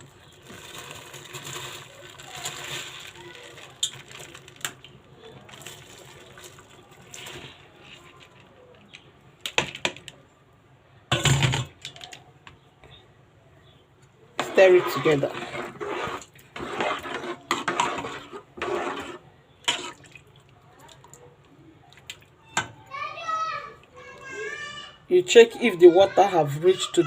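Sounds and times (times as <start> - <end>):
rice pouring into pot: 0.0 - 4.8.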